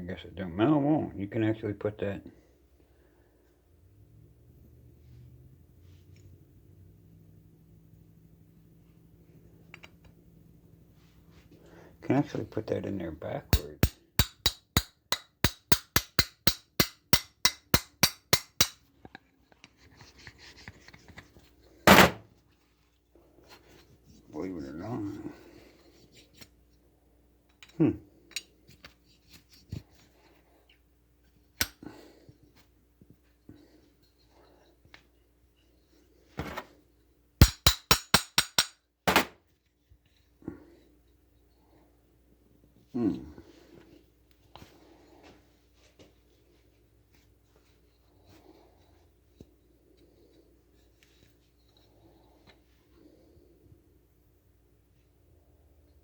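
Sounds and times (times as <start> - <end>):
hammer tapping metal parts: 13.5 - 18.9, 37.4 - 39.4
faint handling noise: 43.5 - 53.1.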